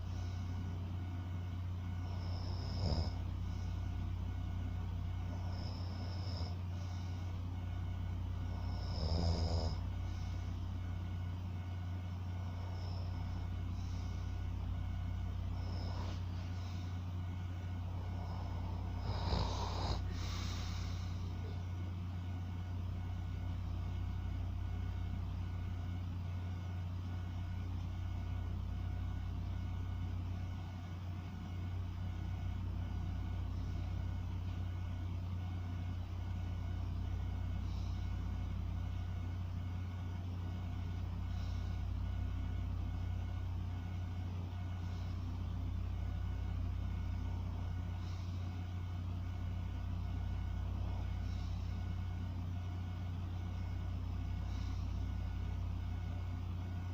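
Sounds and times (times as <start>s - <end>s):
person breathing slowly in sleep: 0.0s - 0.8s, 1.8s - 4.1s, 5.2s - 7.6s, 8.3s - 10.9s, 12.1s - 21.8s, 37.1s - 38.6s, 40.0s - 42.5s, 44.2s - 45.6s, 47.0s - 49.2s, 50.7s - 55.6s
steady low hum: 0.0s - 56.9s.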